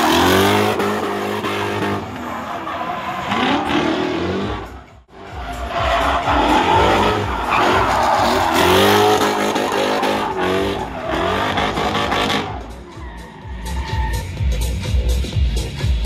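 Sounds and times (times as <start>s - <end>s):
car engine revving hard: 0.0s - 2.1s, 6.2s - 12.6s
tyres squealing: 5.3s - 14.4s.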